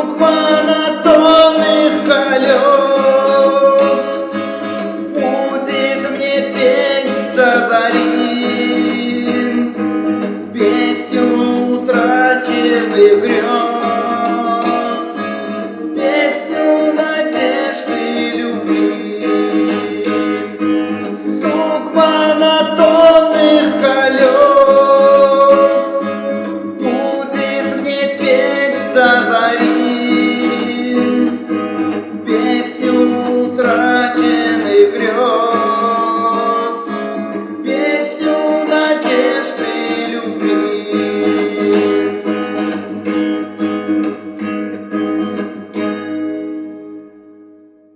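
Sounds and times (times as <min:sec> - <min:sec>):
man singing: 0:00.0 - 0:42.8
acoustic guitar strumming: 0:00.0 - 0:47.9.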